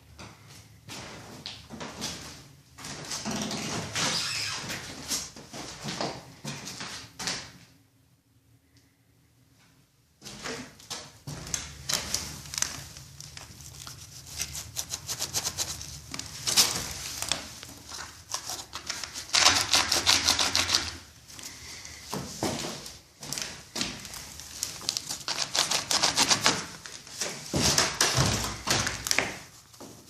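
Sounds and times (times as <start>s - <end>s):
wooden floor creaking and clicking: 22.1s - 30.0s.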